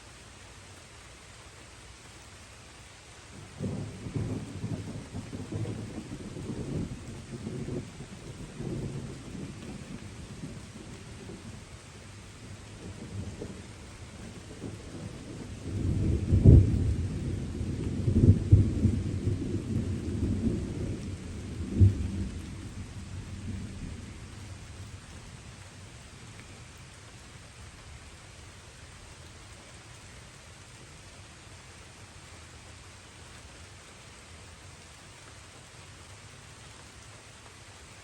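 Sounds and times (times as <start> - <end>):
light rain: 0.0 - 38.0
thunder rumbling and cracking: 3.6 - 24.8.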